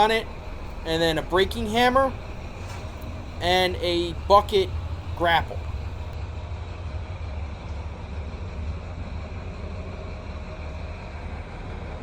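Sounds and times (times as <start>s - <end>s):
low background rumble: 0.0s - 6.8s.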